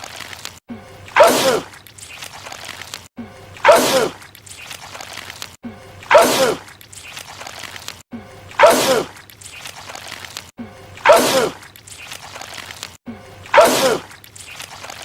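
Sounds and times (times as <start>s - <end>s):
man sneezing: 6.1s - 6.6s, 8.6s - 9.1s, 11.0s - 11.6s, 13.6s - 14.1s.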